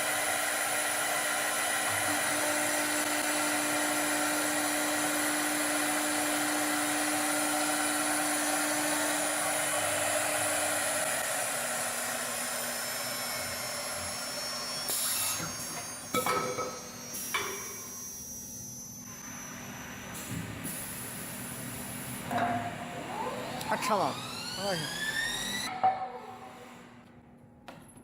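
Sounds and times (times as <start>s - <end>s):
wood turning lathe running: 0.0s - 16.1s, 23.0s - 25.7s.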